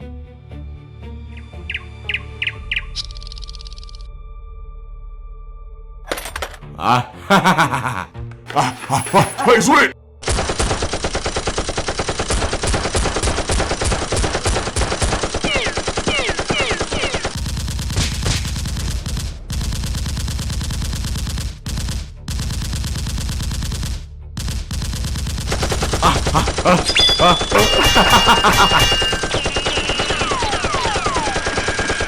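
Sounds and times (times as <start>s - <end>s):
automatic gunfire bursts: 10.2s - 32.0s.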